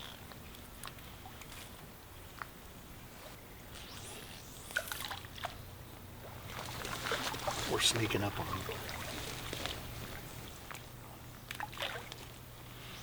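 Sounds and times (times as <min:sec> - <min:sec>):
light splashes: 0:04.2 - 0:12.4
river water sloshing and trickling: 0:04.7 - 0:12.8.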